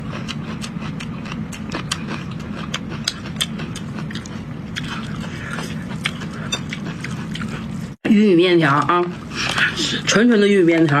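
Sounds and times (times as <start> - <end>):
steady low hum: 0.0 - 11.0
person chewing with wet mouth clicks: 0.1 - 7.7.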